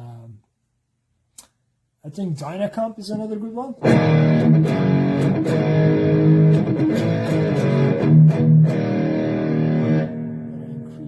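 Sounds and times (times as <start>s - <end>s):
electric guitar notes and chords: 3.8s - 11.0s.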